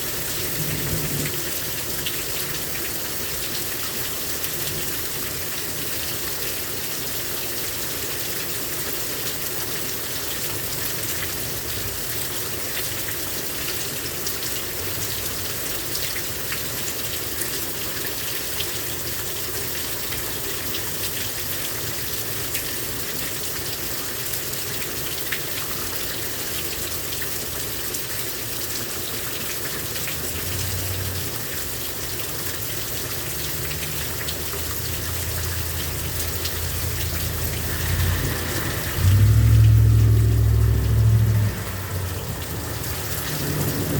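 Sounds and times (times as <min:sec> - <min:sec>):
heavy rain pouring: 0:00.0 - 0:43.9
raindrops ticking on surfaces: 0:00.0 - 0:43.9
low rumble: 0:36.6 - 0:43.9.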